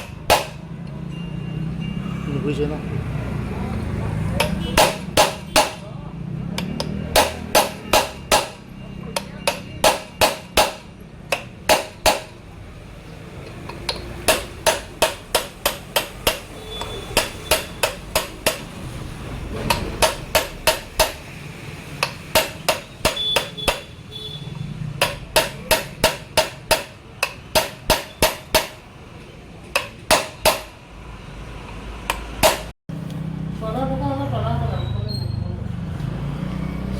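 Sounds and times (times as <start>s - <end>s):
hammer striking metal: 0.0s - 0.7s, 4.3s - 5.9s, 6.6s - 12.5s, 13.4s - 24.0s, 24.9s - 28.9s, 29.7s - 30.9s, 32.1s - 32.7s.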